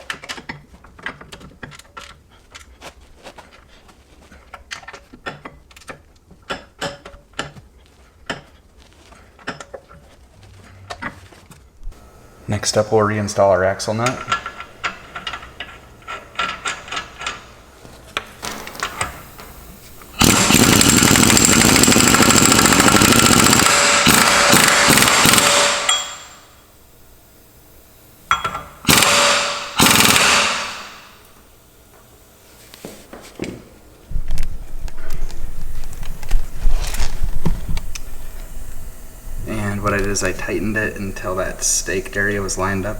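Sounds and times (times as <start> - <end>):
impact wrench hammering: 12.0 - 26.6, 28.3 - 31.3.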